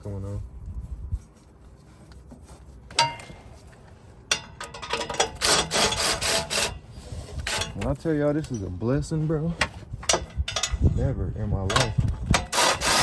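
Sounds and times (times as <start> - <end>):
metal clank: 2.9 - 3.5, 4.3 - 6.2
tools and metal parts clattering: 2.9 - 6.8, 7.4 - 8.8, 9.6 - 10.8, 11.7 - 13.0.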